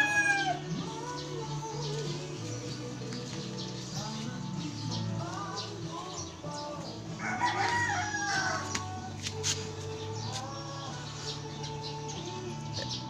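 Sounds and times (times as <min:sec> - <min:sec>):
rooster crowing: 0:00.0 - 0:00.6, 0:07.2 - 0:08.8.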